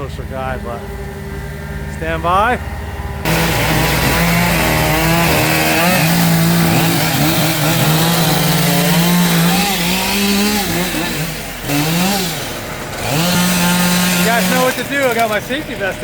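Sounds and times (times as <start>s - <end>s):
chainsaw running at high speed: 3.2s - 16.0s.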